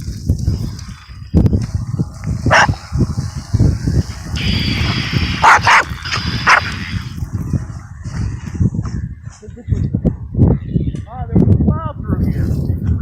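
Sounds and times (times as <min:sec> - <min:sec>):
low rumbling noise: 0:00.0 - 0:13.0
small dog barking: 0:02.5 - 0:02.8, 0:05.4 - 0:05.9, 0:06.5 - 0:06.7.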